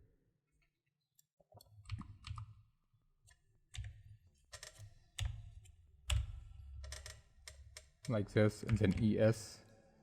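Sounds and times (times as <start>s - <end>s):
keyboard and mouse clicking: 1.6s - 2.6s.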